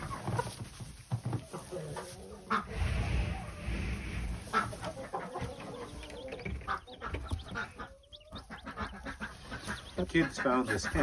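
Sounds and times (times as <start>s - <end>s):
chickens clucking: 0.0s - 11.0s
low rumble on microphone: 2.6s - 5.1s.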